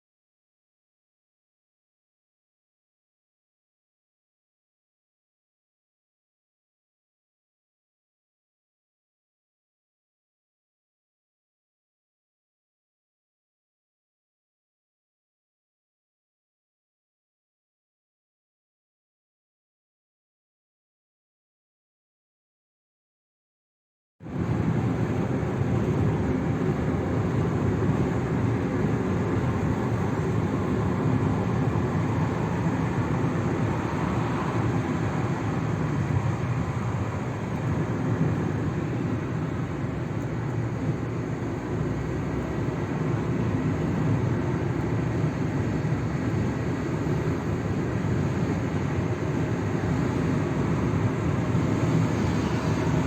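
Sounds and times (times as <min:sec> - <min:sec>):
vehicle engine rumble: 0:24.2 - 0:53.0.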